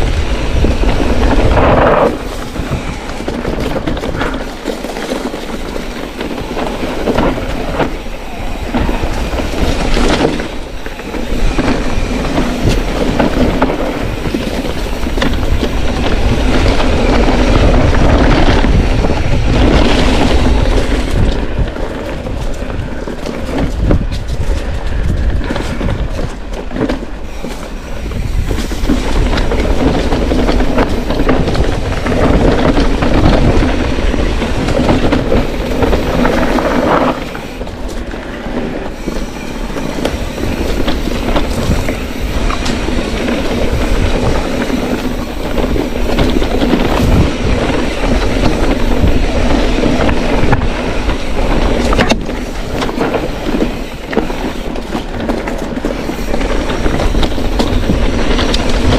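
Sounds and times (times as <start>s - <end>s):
bicycle rattling over rough trail: 0.0s - 58.9s
wind on microphone: 0.0s - 58.9s.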